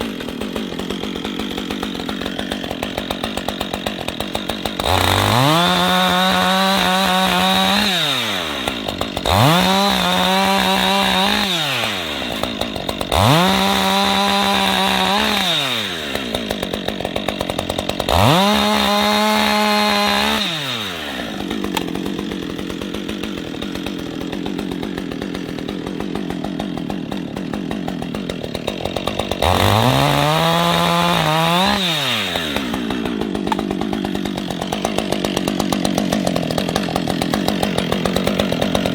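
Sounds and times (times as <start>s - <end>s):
chainsaw engine revving: 0.0s - 38.9s
chainsaw ticking idle: 0.0s - 38.9s.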